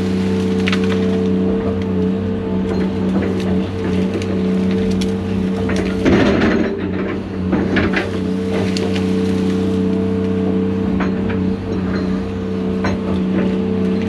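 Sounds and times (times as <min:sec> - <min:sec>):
wood cracking and snapping: 0:00.0 - 0:11.4
diesel excavator engine: 0:00.0 - 0:14.0.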